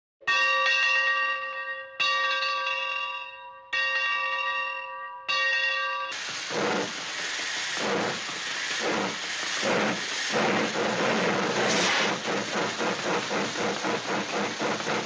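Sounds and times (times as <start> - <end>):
loud hiss: 6.1 - 15.0.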